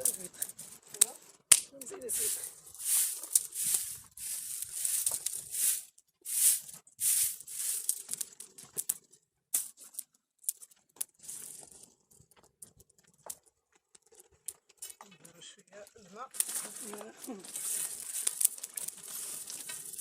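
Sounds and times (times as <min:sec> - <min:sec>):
sharp wood cracks: 0:00.0 - 0:05.5, 0:07.3 - 0:11.2, 0:16.3 - 0:20.0
kindling rustling and snapping: 0:00.0 - 0:05.8, 0:06.4 - 0:10.7, 0:16.3 - 0:20.0.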